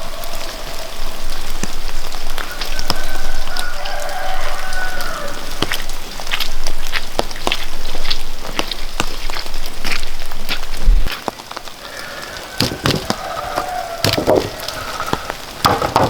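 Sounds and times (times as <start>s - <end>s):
wood fire crackling: 0.0s - 16.0s
fire pops: 5.6s - 16.0s.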